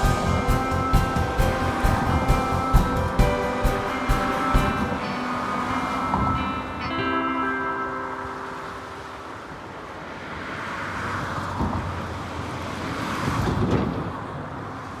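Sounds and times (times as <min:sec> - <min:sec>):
low wind buffets: 0:00.0 - 0:07.0.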